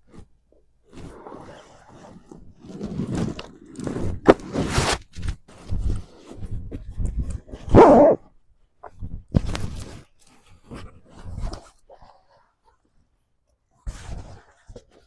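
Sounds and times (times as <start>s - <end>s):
rustling and crunching: 0.0s - 8.3s.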